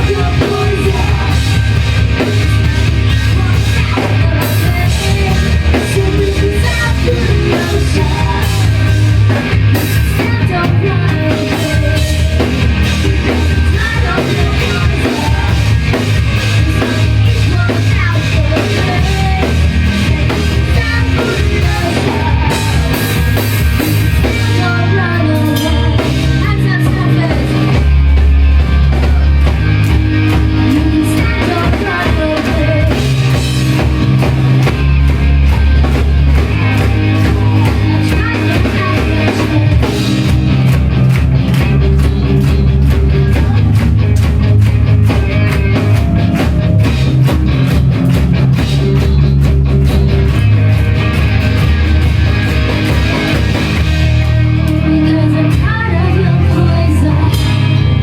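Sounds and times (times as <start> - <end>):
person singing: 0.0 - 16.0, 16.6 - 23.5, 24.2 - 27.8, 30.4 - 34.7, 36.4 - 40.4, 54.2 - 58.0
bass guitar: 0.0 - 58.0
distorted guitars: 0.0 - 58.0
drum kit: 0.0 - 58.0.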